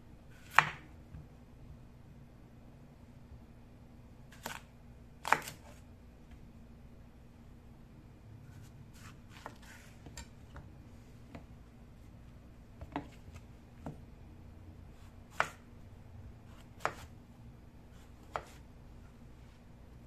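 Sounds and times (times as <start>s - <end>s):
knife chopping on cutting board: 0.4s - 0.8s, 5.2s - 5.7s, 15.3s - 15.6s, 16.5s - 17.1s, 18.2s - 18.6s.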